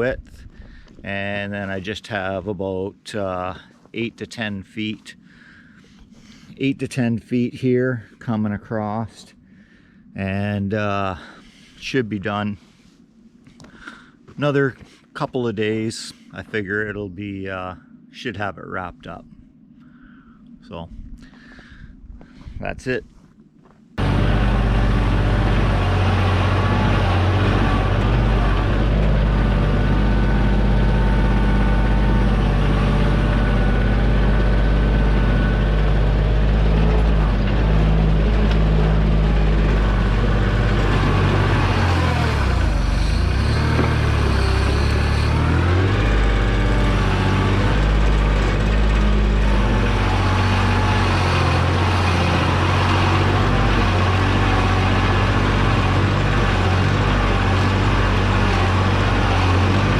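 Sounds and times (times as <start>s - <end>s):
tractor diesel engine running: 24.0s - 59.9s.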